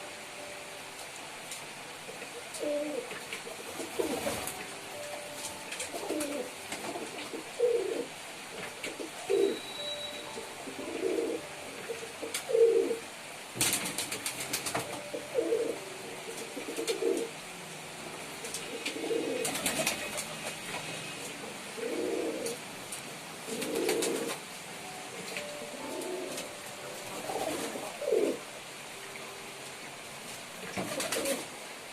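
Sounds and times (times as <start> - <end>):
pigeons cooing: 2.1 - 4.8, 5.7 - 13.5, 14.4 - 17.5, 18.1 - 22.6, 23.4 - 24.5, 25.2 - 28.9, 30.7 - 31.6.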